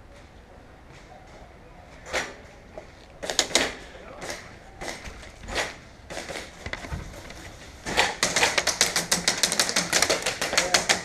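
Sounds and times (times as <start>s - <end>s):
airsoft gunfire: 3.2s - 3.8s, 7.8s - 11.0s
pellet hits: 7.8s - 11.0s.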